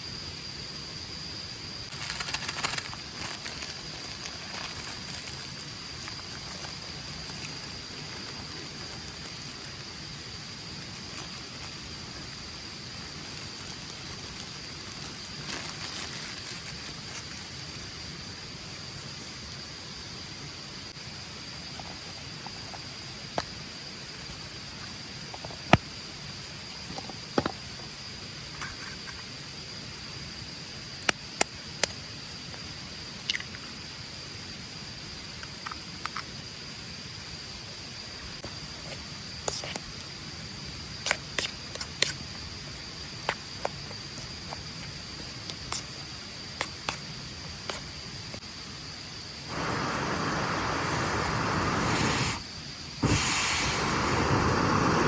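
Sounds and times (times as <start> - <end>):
high-pitched insect drone: 45.6 - 55.0
campfire crackling and popping: 49.5 - 52.2.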